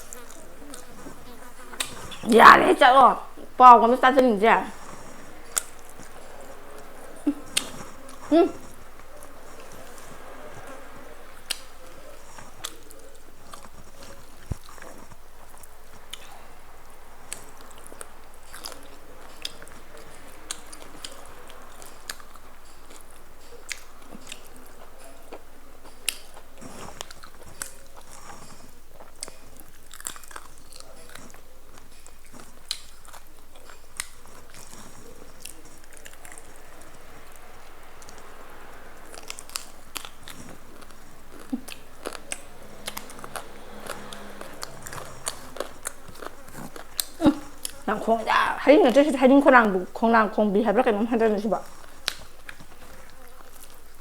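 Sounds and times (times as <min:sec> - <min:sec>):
person chewing crunchy food: 0:00.0 - 0:02.3, 0:04.5 - 0:48.2, 0:51.5 - 0:54.0.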